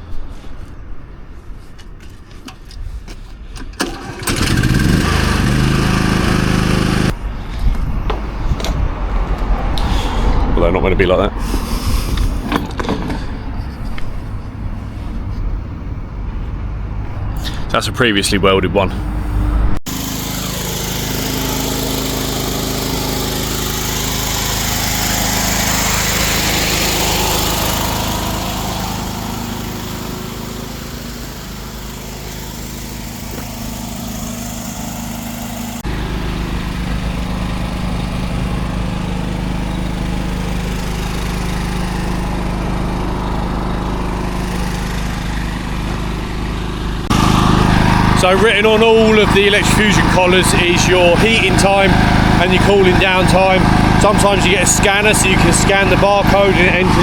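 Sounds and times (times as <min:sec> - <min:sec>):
small engine droning: 0:03.8 - 0:07.2, 0:19.0 - 0:57.0.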